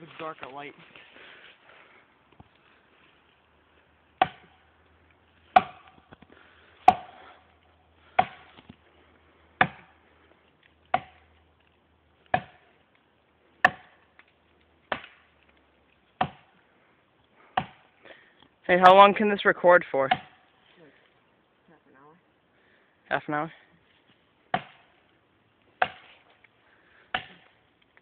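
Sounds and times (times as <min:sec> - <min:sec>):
axe chopping tree trunk: 0:04.2 - 0:04.7, 0:05.5 - 0:07.5, 0:08.1 - 0:08.8, 0:09.6 - 0:10.0, 0:10.8 - 0:11.4, 0:12.3 - 0:12.8, 0:13.6 - 0:15.4, 0:16.1 - 0:16.5, 0:17.5 - 0:17.9, 0:20.1 - 0:20.5, 0:24.5 - 0:25.0, 0:25.8 - 0:26.4, 0:27.1 - 0:27.6.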